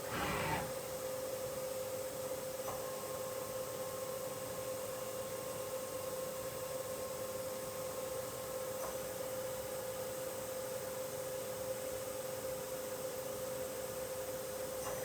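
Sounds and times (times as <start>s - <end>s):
machine spindle whine: 0.0s - 0.8s.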